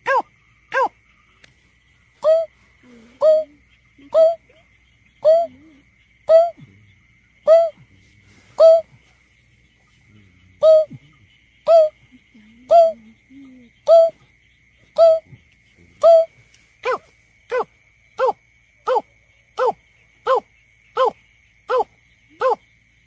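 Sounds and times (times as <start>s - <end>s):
bird hooting calls: 2.2s - 7.9s, 8.6s - 9.1s, 10.3s - 14.2s, 14.9s - 15.4s.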